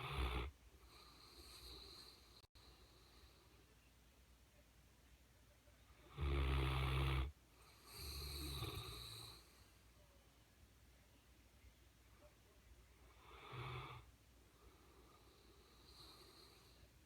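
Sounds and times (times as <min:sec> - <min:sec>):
dog snoring: 0:00.0 - 0:02.3, 0:06.1 - 0:09.5, 0:13.2 - 0:14.0.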